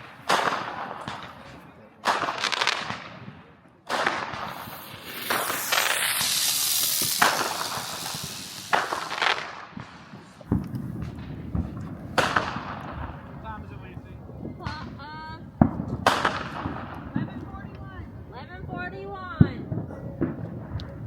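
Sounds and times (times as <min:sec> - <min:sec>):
firework pops and cracks: 0:00.0 - 0:13.4, 0:15.6 - 0:17.8
spinning fireworks hissing: 0:03.9 - 0:10.8.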